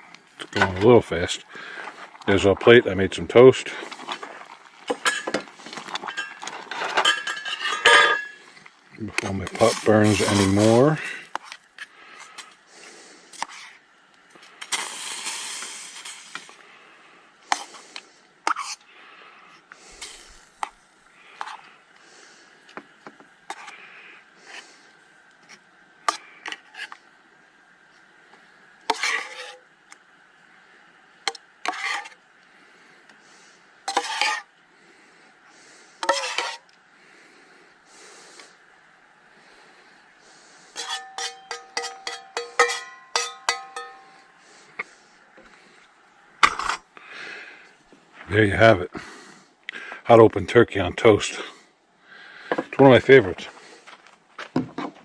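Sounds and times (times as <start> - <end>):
metal spoon scraping a pot: 9.4 - 11.0, 28.9 - 29.6, 31.6 - 32.2, 33.9 - 34.5, 36.0 - 36.6, 40.7 - 44.3.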